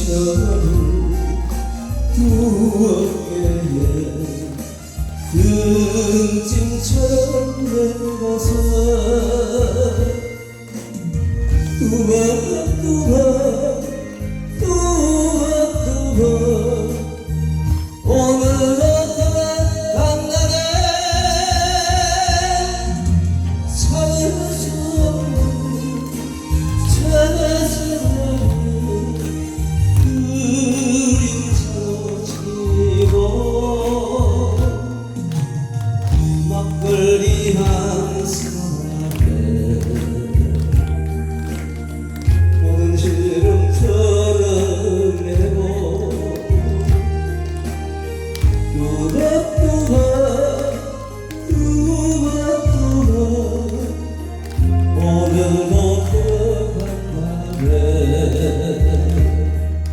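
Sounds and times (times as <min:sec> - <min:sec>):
instrumental accompaniment with bass: 0:00.0 - 0:59.9
person singing with vibrato: 0:00.0 - 0:59.9
drum beat: 0:02.2 - 0:06.0, 0:17.7 - 0:33.4, 0:36.0 - 0:44.5, 0:48.4 - 0:50.4, 0:54.6 - 0:56.5.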